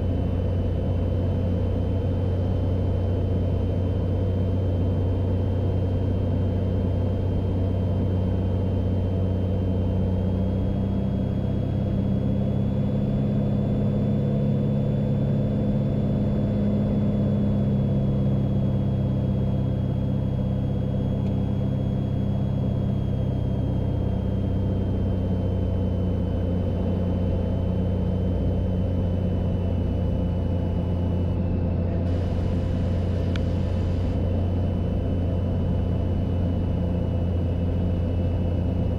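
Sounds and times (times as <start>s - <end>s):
airplane engine and propeller droning: 0.0s - 38.9s.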